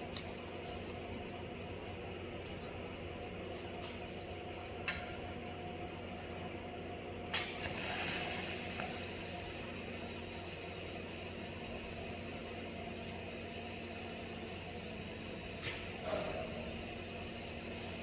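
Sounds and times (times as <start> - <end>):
low electrical hum: 0.0 - 18.0
welding arc hissing: 7.6 - 18.0.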